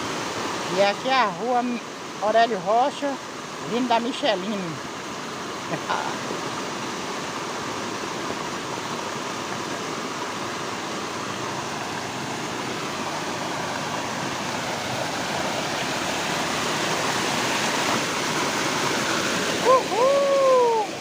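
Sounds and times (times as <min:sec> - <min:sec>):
heavy rain pouring: 0:11.4 - 0:21.0.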